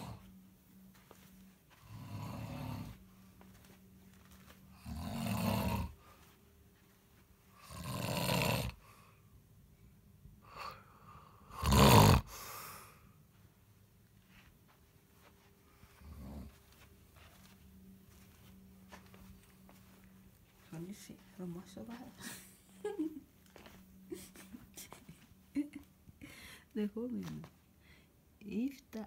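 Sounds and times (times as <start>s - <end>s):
man snoring loudly: 1.8s - 2.9s, 4.8s - 6.0s, 7.6s - 8.8s, 11.4s - 12.6s.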